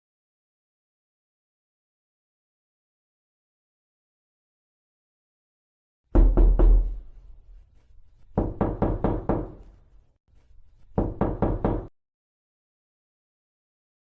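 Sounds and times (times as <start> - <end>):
knocking on a door: 6.1 - 7.1, 8.4 - 9.6, 11.0 - 11.9.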